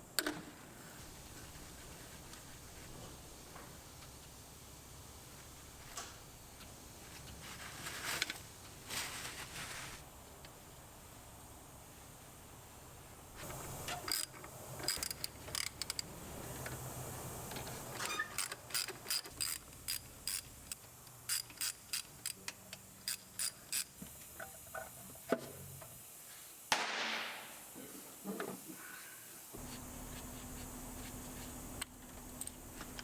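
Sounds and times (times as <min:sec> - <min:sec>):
ratchet wrench clicking: 0:14.1 - 0:16.1, 0:18.4 - 0:24.0.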